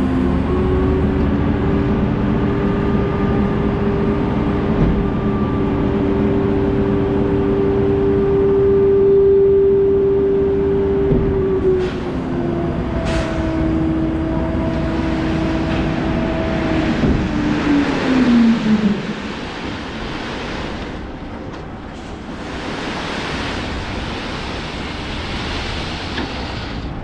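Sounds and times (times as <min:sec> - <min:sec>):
vehicle engine hum: 0:00.0 - 0:27.0
wind or road rushing: 0:10.8 - 0:27.0.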